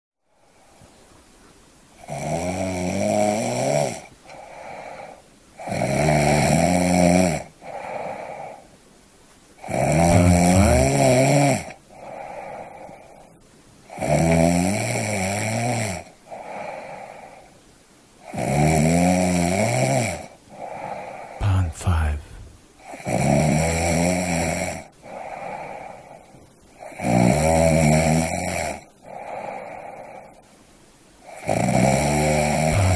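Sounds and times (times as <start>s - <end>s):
person snoring: 2.1s - 8.4s, 9.6s - 12.8s, 18.3s - 25.5s, 31.3s - 32.9s.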